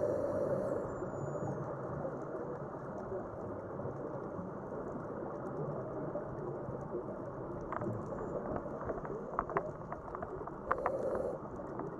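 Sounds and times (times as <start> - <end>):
sharp irregular clicks: 8.8 - 11.4.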